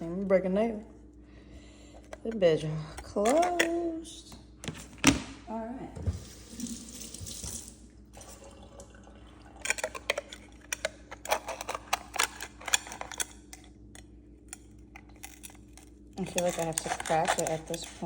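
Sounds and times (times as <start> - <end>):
tap water running: 6.0 - 10.6
oyster shell clicking and scraping: 9.6 - 18.0.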